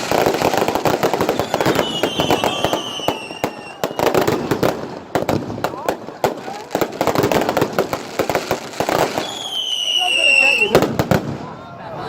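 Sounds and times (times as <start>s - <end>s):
fireworks bangs and crackles: 0.0s - 11.6s
high falling whistles: 1.4s - 4.0s, 9.2s - 10.8s.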